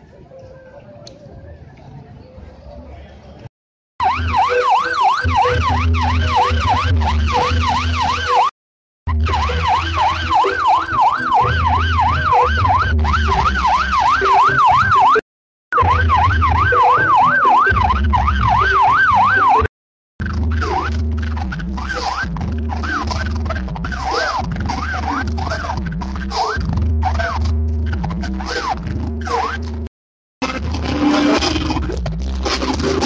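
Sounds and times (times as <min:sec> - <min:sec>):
fast yelping siren: 0:04.0 - 0:08.5, 0:09.1 - 0:19.7, 0:20.5 - 0:29.6
heavy pulsing bass: 0:05.2 - 0:08.5, 0:09.1 - 0:15.1, 0:15.8 - 0:33.0.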